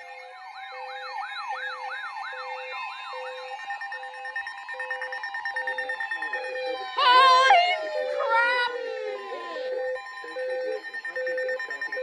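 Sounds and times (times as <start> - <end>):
electronic siren yelp: 0.0 - 12.0
pulsing beeping tone: 4.7 - 12.0.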